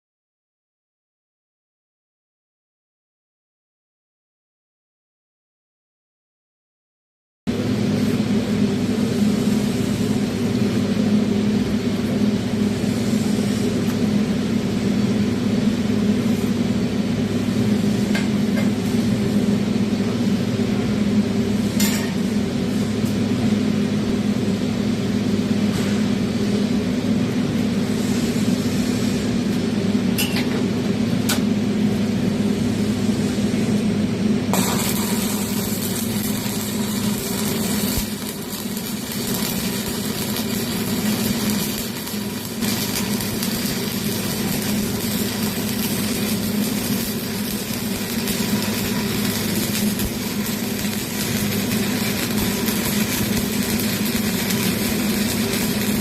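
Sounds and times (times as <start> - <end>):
electrical hum: 7.5 - 56.0
sharp welding pops: 34.5 - 56.0
welding arc crackling: 34.5 - 56.0.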